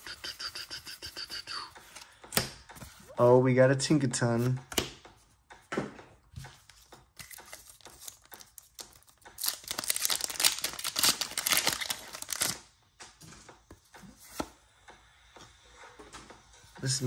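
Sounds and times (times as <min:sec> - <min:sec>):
foil wrapper crinkling and tearing: 0:07.2 - 0:12.6.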